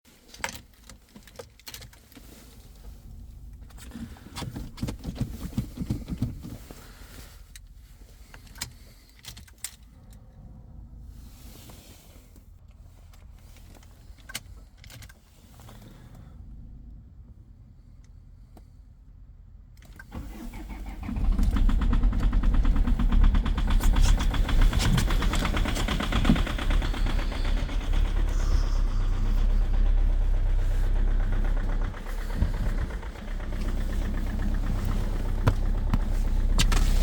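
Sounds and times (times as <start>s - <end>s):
diesel engine cranking and starting: 0.1s - 17.1s, 19.8s - 37.0s
diesel engine idling with knocking: 20.3s - 37.0s.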